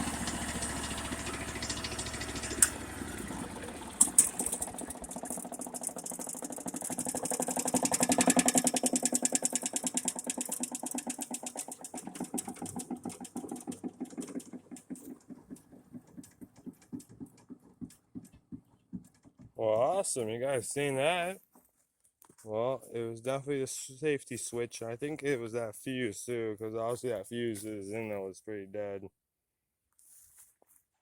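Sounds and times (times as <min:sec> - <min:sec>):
wood chipper engine running: 0:00.0 - 0:18.4.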